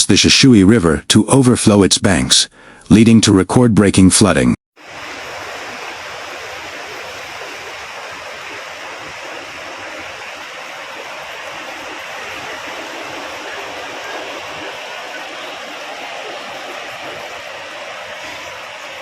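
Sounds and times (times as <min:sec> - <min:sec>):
floodwater rushing: 0:04.8 - 0:19.0.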